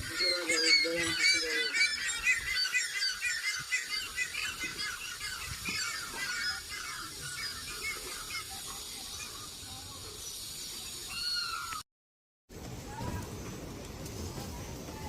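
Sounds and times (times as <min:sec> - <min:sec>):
many birds chirping: 0:00.0 - 0:11.8.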